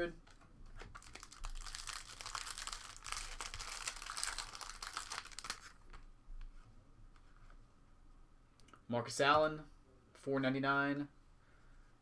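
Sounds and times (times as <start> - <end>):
plastic wrapper crinkling and tearing: 0.8 - 6.0.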